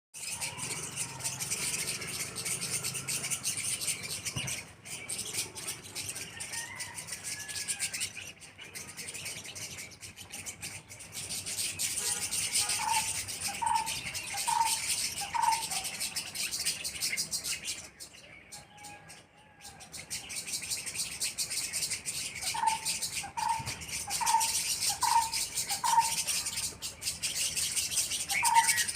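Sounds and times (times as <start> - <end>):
small birds chirping: 0.2 - 28.9
low-pitched bird call: 11.9 - 15.9, 22.5 - 26.7.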